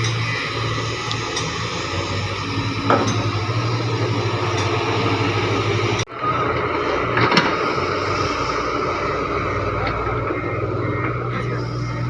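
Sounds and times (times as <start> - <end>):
diesel engine running: 0.0 - 12.0
sharp metallic clanks: 2.7 - 5.1.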